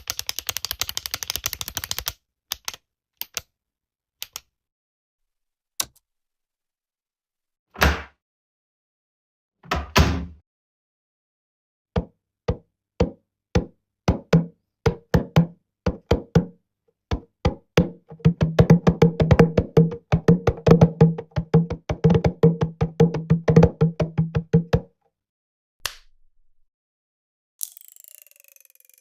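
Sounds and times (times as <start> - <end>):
bongo hits: 17.5 - 24.8.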